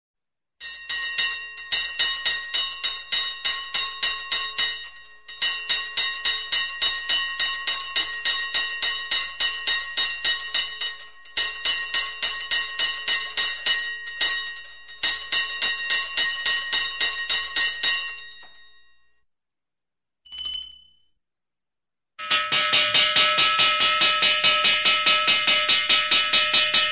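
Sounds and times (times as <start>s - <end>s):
handheld fire bell ringing: 0.6s - 18.8s, 20.3s - 21.0s.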